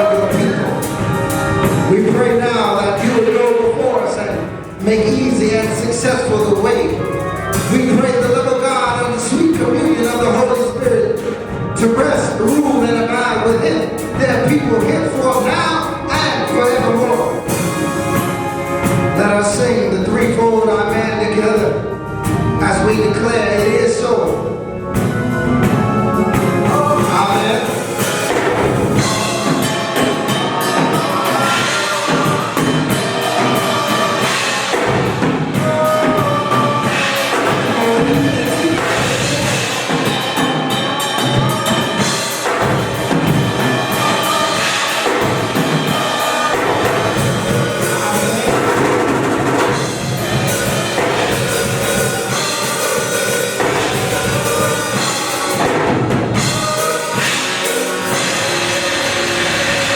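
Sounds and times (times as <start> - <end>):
church music with drum kit: 0.0 - 59.9.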